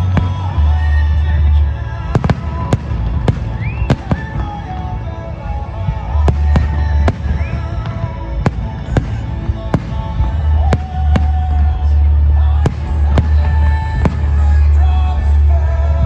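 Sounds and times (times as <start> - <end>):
fireworks bangs: 0.0 - 15.5
loud music with heavy bass: 0.0 - 16.0
rising firework whistles: 2.2 - 4.7.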